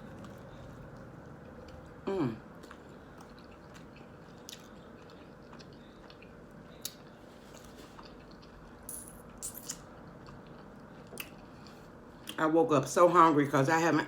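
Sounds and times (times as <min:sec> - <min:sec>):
person chewing with mouth clicks: 0:00.0 - 0:08.7.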